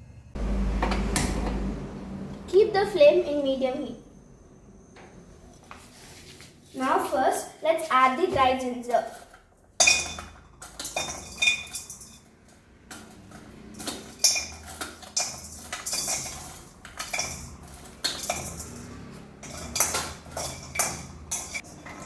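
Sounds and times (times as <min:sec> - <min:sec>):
spoon scraping metal pan: 0:12.9 - 0:22.0.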